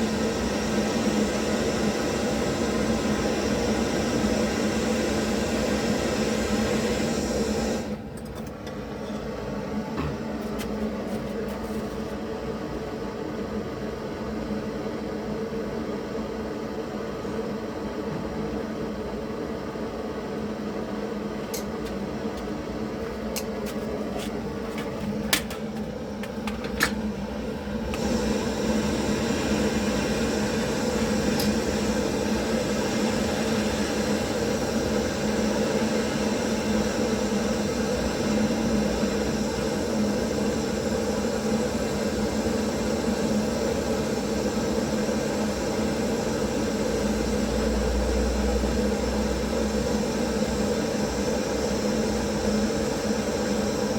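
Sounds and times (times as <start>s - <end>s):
torch flame hissing: 0.0s - 8.0s, 27.0s - 53.9s
steady hum: 18.7s - 53.9s.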